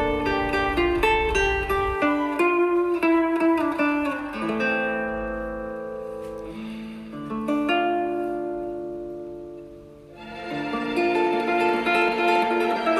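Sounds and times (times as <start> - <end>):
plucked guitar chords: 0.0 - 12.9.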